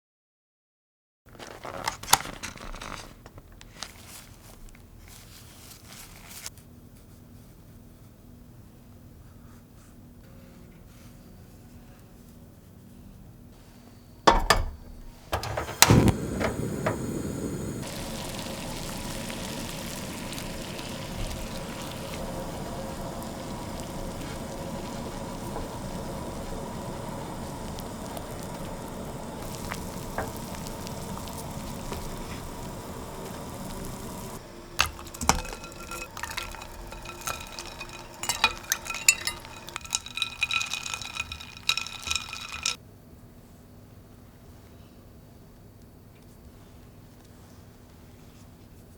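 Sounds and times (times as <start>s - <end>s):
water bubbling in a pot: 16.1s - 42.8s
utensils clinking and tapping: 34.8s - 42.8s.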